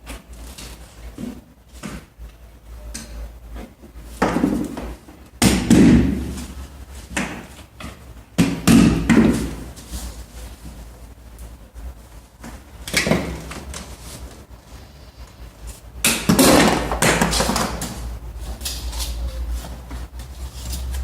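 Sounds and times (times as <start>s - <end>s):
heavy knocks on pipes: 4.2s - 6.4s, 8.4s - 9.6s.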